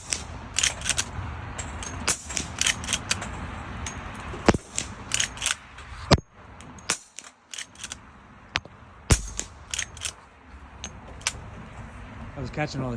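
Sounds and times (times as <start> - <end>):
suppressed gunshots: 0.0 - 3.3, 4.3 - 8.0, 9.1 - 10.2
metallic action clicks: 0.0 - 8.0, 9.1 - 10.2, 10.8 - 11.4.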